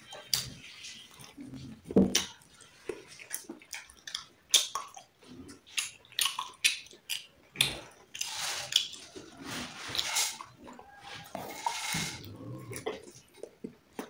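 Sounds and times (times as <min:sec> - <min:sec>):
chewing and biting: 0:00.0 - 0:11.6, 0:12.2 - 0:14.0.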